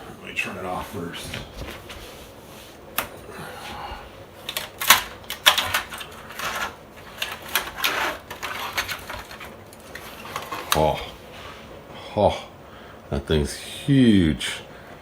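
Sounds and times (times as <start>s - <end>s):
hard plastic clicking and clattering: 4.5s - 10.9s.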